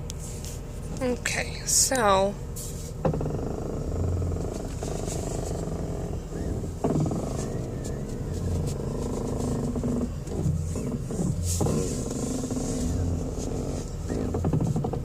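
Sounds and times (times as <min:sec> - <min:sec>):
car engine running: 0:00.0 - 0:15.0
low steering hum: 0:00.0 - 0:15.0.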